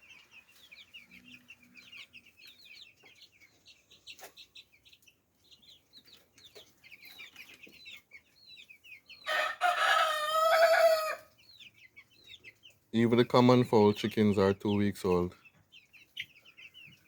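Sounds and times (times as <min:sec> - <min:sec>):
chicks peeping: 0:00.0 - 0:17.0.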